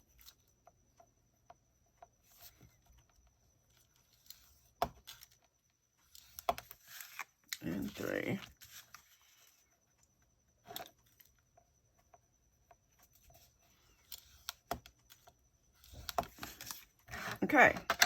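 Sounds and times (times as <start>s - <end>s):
paper rustling and scraping: 6.7s - 9.6s.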